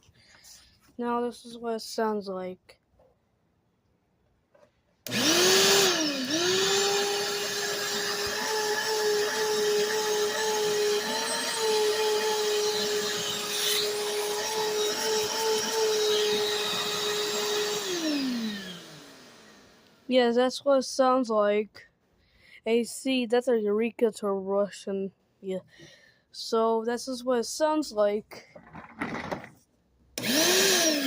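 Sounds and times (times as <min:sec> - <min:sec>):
person talking: 0:00.9 - 0:02.8, 0:20.1 - 0:21.9, 0:22.6 - 0:25.7, 0:26.4 - 0:28.6
vacuum cleaner motor whining: 0:05.1 - 0:20.1, 0:30.2 - 0:31.0.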